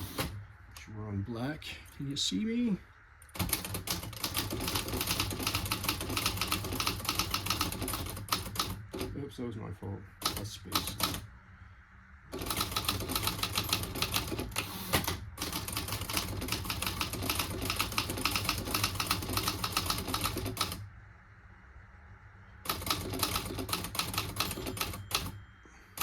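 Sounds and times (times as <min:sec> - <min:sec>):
manual typewriter typing: 0:03.3 - 0:09.2, 0:10.2 - 0:11.2, 0:12.3 - 0:20.8, 0:22.7 - 0:25.4.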